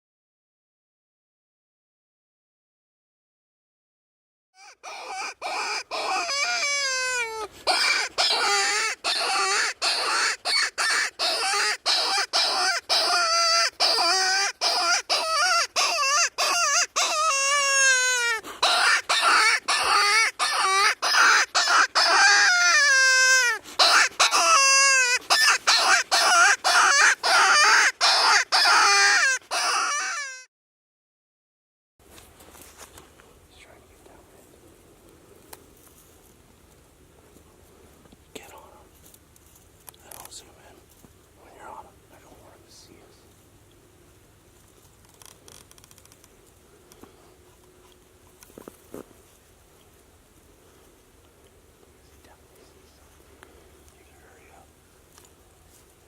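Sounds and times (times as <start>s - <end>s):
coyotes howling: 4.6s - 30.4s
coyotes yipping and barking: 4.6s - 30.5s.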